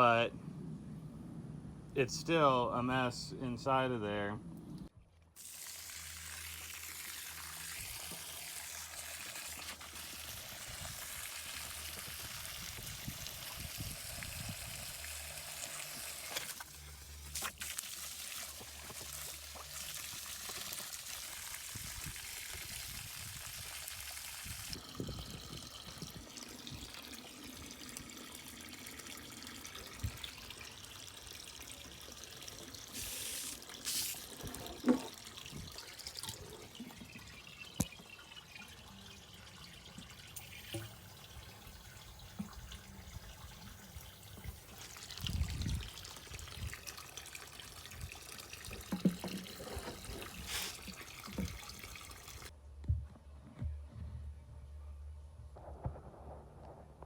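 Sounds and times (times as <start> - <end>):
water running and trickling: 5.4 - 52.5.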